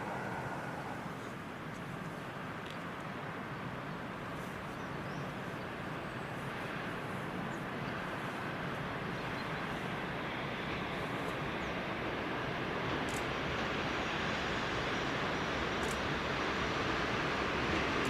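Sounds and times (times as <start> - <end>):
freight train approaching: 0.0 - 1.7.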